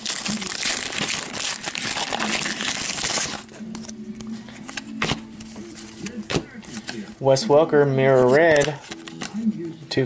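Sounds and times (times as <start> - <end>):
foil wrapper crinkling: 0.0 - 4.0.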